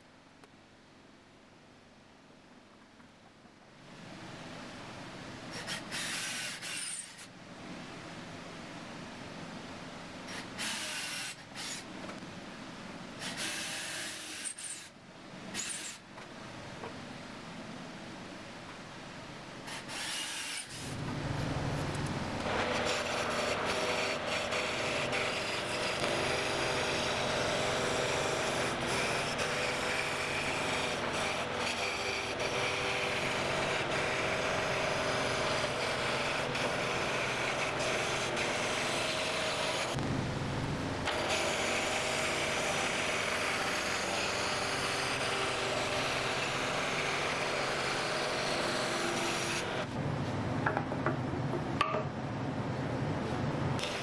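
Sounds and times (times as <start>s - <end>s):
faint hum: 20.8s - 53.9s
tool rasping on wood: 22.5s - 39.9s.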